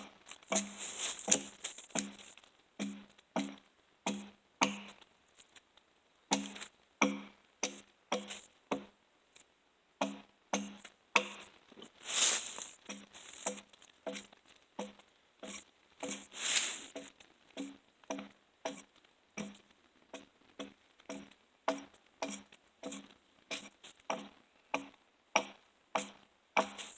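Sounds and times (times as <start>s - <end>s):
axe striking log: 0.0s - 2.2s.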